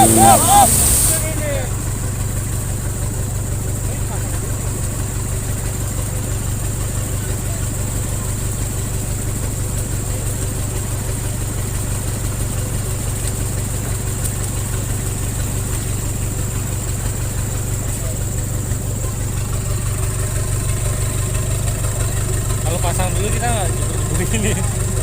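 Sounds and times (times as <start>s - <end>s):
high-pitched hiss: 0.0s - 1.4s
engine idling: 0.0s - 25.0s.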